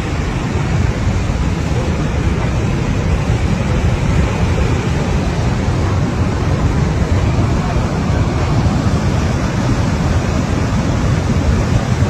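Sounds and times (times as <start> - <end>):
river rushing loudly: 0.0 - 12.0.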